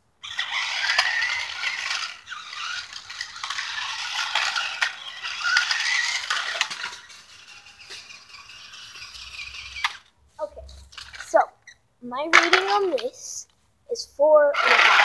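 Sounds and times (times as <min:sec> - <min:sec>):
toy car motor whining: 0:00.2 - 0:10.1, 0:10.8 - 0:11.8, 0:14.5 - 0:15.0
plastic body and wheels rattling: 0:00.2 - 0:11.4, 0:12.3 - 0:13.1, 0:14.6 - 0:15.0.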